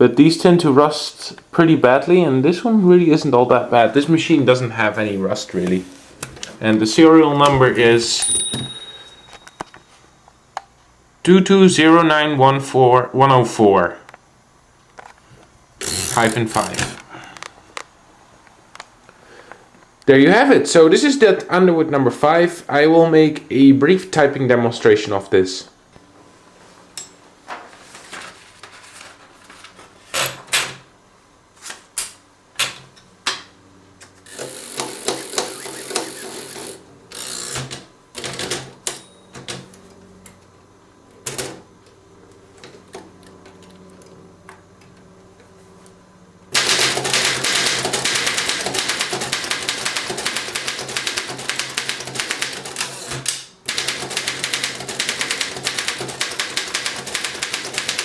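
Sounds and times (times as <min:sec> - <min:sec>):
typewriter typing: 0:34.3 - 0:39.6, 0:46.6 - 0:58.0.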